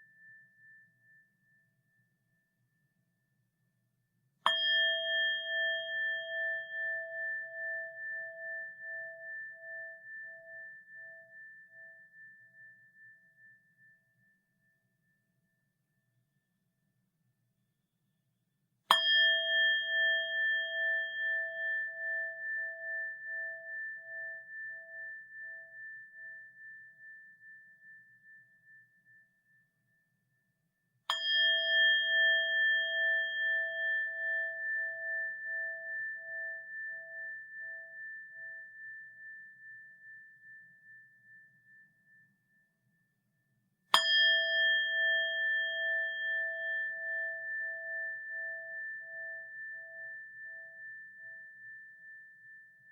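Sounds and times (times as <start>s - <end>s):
bowl bell ringing: 4.5s - 14.2s, 18.9s - 29.3s, 31.1s - 42.2s, 44.0s - 52.9s.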